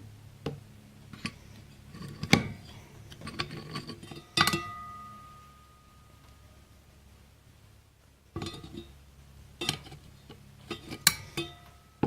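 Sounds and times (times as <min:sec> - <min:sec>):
metal clutch plates clinking: 0:01.1 - 0:06.3.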